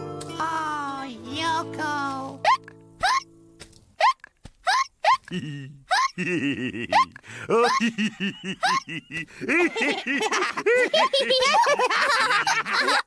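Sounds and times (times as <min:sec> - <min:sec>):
person hiccuping: 0:02.5 - 0:03.3, 0:04.0 - 0:07.8
person laughing: 0:04.0 - 0:13.0.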